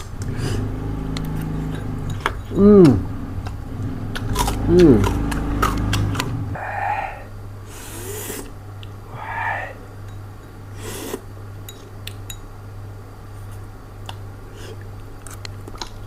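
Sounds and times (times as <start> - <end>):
low steady hum: 0.0 - 16.0
person chewing crunchy food: 0.3 - 6.6.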